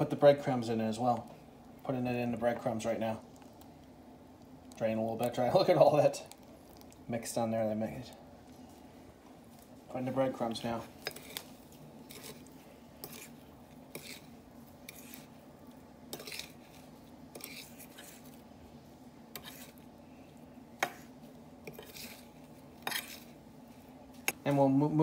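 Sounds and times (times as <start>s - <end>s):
faint steady hum: 0.0s - 25.0s
utensils scraping and clinking on bowl: 10.8s - 15.4s, 16.1s - 18.4s, 19.4s - 19.8s, 20.8s - 23.4s.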